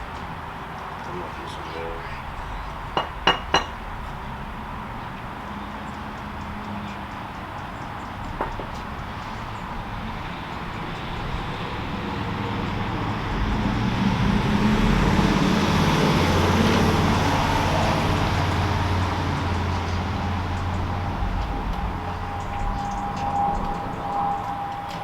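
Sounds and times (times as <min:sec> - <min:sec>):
vehicle passing on road: 0:00.0 - 0:25.0.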